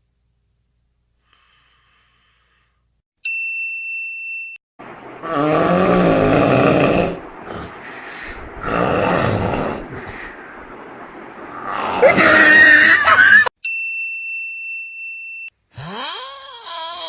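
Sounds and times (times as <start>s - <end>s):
high ringing ding: 3.2s - 4.6s, 13.6s - 15.5s
loud rough snoring: 5.2s - 10.4s.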